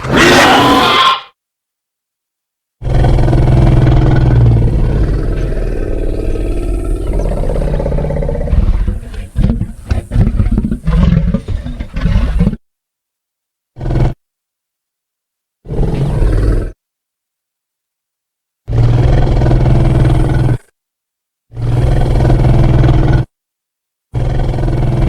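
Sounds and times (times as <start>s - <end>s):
monster roar: 0.0s - 1.3s.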